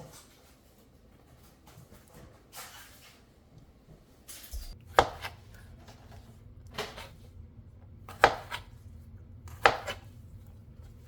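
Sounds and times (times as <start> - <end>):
low steady hum: 3.6 - 11.0
knife chopping on cutting board: 4.8 - 7.3, 8.1 - 11.0.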